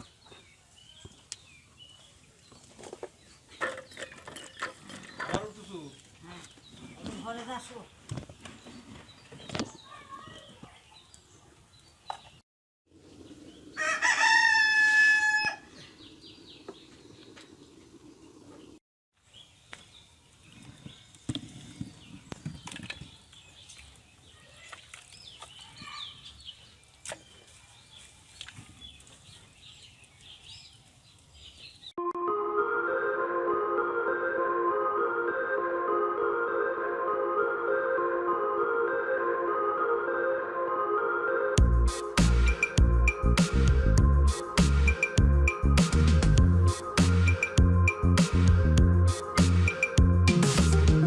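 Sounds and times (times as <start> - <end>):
rooster crowing: 13.7 - 15.7.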